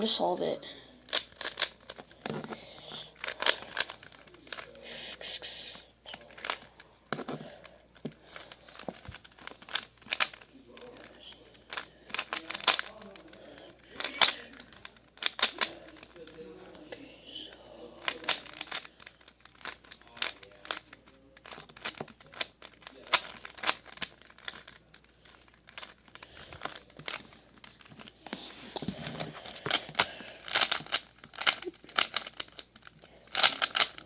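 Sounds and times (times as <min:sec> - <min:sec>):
puzzle cube layers clicking: 0:29.6 - 0:34.0.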